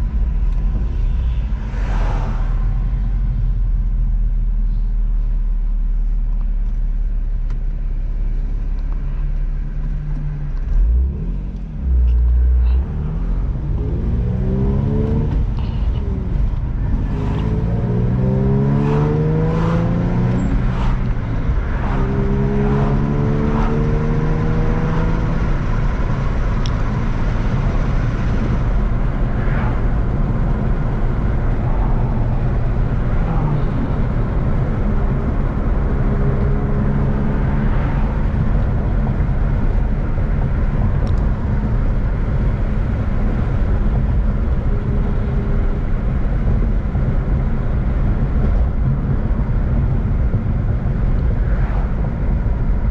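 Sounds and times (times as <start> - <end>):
car engine accelerating: 0.0 - 52.9
low road rumble: 0.0 - 52.9.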